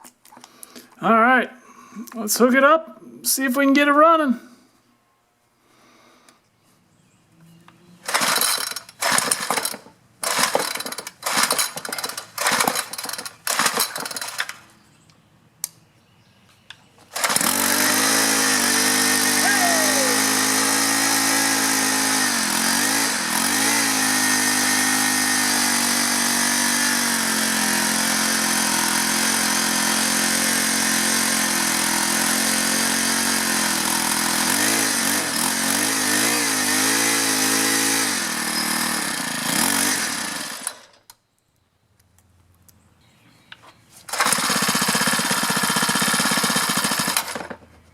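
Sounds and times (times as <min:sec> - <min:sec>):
recoil starter pulls: 0:08.0 - 0:14.6, 0:17.1 - 0:22.6, 0:44.1 - 0:47.6
string trimmer engine running: 0:08.0 - 0:14.6, 0:17.1 - 0:41.0, 0:44.1 - 0:47.6.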